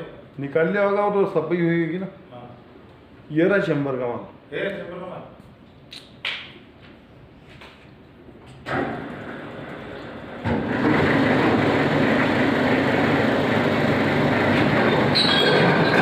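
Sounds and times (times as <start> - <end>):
grinder machine running: 8.7 - 16.0.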